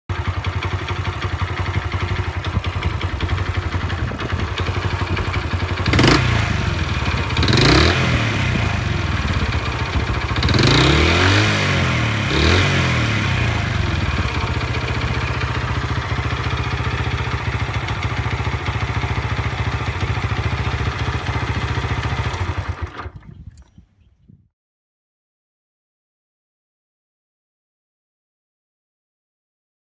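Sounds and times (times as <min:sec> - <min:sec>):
motorcycle engine idling and revving: 0:00.1 - 0:23.6.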